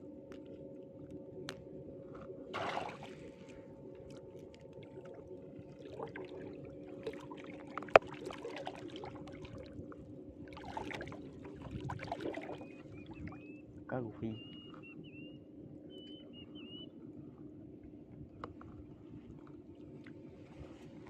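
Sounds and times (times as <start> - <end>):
faint steady hum: 0.0 - 21.0
water splashing and dripping: 2.5 - 3.6.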